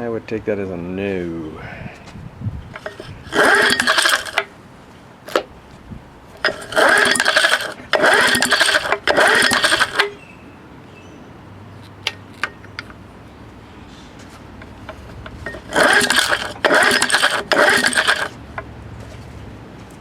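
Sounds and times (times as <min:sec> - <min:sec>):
recoil starter rope pulls: 0:02.7 - 0:04.5, 0:06.4 - 0:10.2, 0:14.6 - 0:18.6
small engine cranking: 0:02.7 - 0:04.5, 0:06.4 - 0:10.2, 0:14.6 - 0:18.6.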